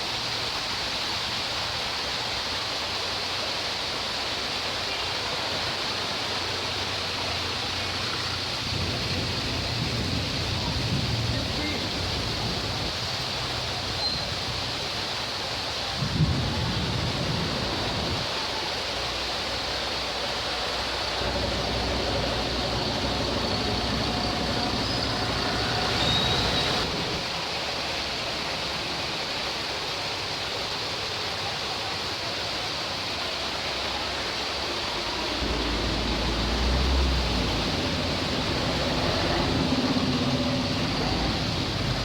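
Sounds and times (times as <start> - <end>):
rain falling: 0.0 - 42.0
low rumble: 21.0 - 27.2.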